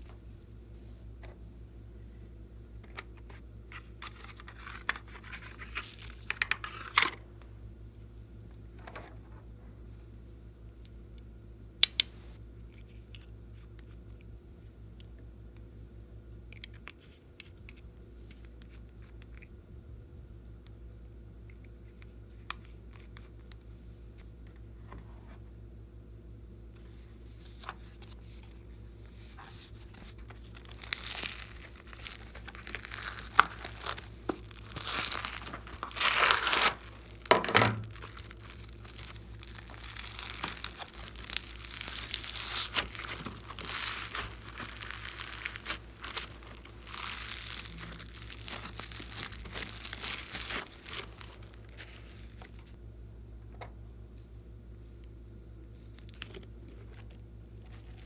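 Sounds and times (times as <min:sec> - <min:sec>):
crinkling and tearing: 0:03.7 - 0:07.2, 0:26.8 - 0:52.8, 0:55.7 - 0:58.0.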